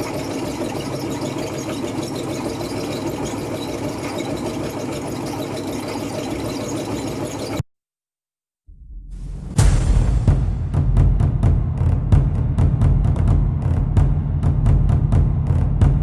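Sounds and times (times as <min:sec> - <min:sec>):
motor running steadily: 0:00.0 - 0:07.6.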